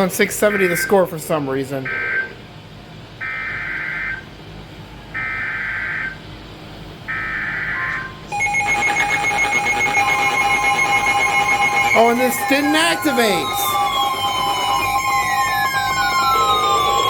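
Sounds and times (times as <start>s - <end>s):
steady attention tone: 7.2s - 17.0s
buzzing data-tone bursts: 8.3s - 17.0s.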